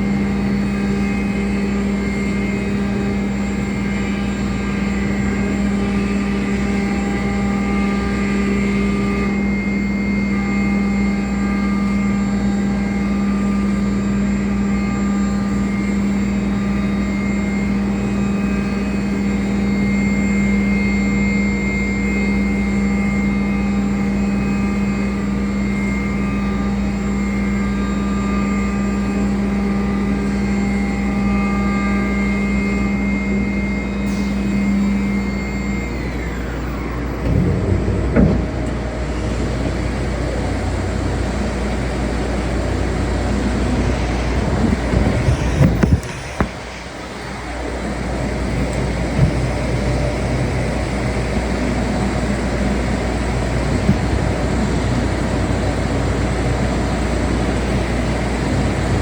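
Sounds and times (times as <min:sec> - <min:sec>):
faint high machine tones: 0:00.0 - 0:37.3
cnc router humming: 0:00.0 - 0:59.0.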